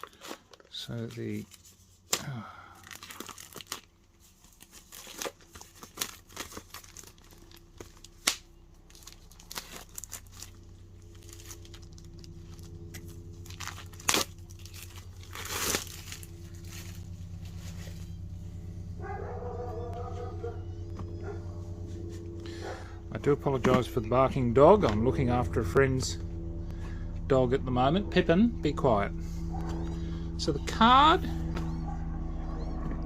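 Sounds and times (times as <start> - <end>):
plastic wrapping crinkling and tearing: 0.0 - 18.3
steady low hum: 0.0 - 33.0.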